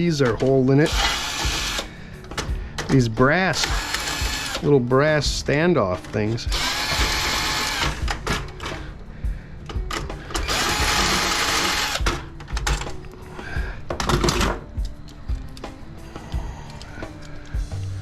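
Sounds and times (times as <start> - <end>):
power driver whirring: 0.3 - 2.9, 3.5 - 4.8, 6.5 - 8.8, 9.6 - 12.4
metal parts clicking and knocking: 9.6 - 13.0, 13.9 - 15.7.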